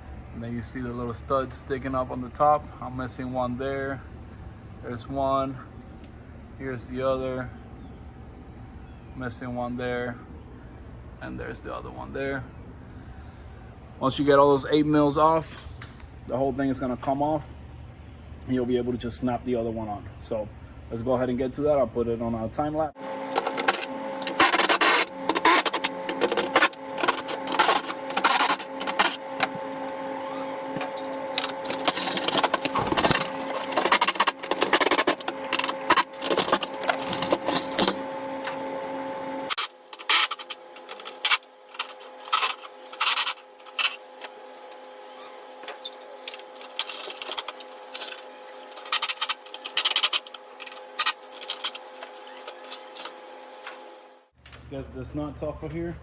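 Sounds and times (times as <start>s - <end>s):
steady hum: 9.4s - 56.0s.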